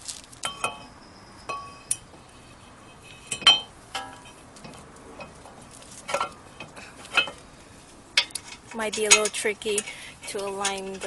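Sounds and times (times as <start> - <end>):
metallic clinks of bolts and bracket: 3.2 - 5.4, 6.1 - 7.4.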